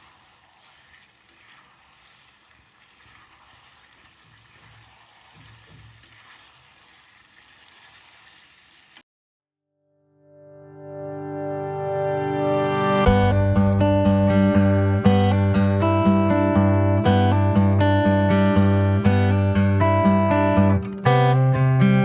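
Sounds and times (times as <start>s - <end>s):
food sizzling in a pan: 0.0s - 9.0s.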